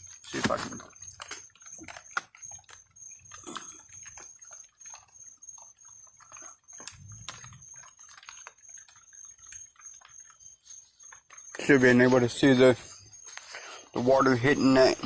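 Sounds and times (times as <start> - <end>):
rain dripping onto a tarp: 0.0 - 4.2, 6.2 - 10.2.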